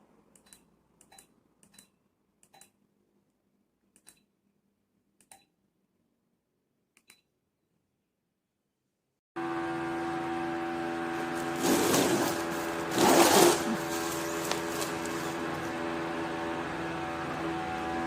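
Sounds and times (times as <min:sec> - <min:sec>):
ceiling fan humming: 0:09.4 - 0:18.0
fan air rushing: 0:09.9 - 0:18.0.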